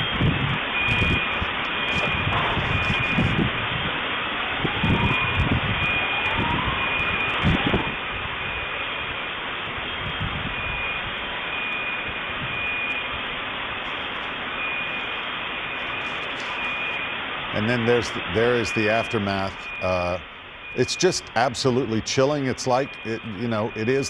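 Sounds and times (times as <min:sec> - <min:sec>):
roaring street noise: 0:00.0 - 0:24.0
deep rumbles: 0:00.8 - 0:04.0
faint high beep: 0:13.9 - 0:24.0.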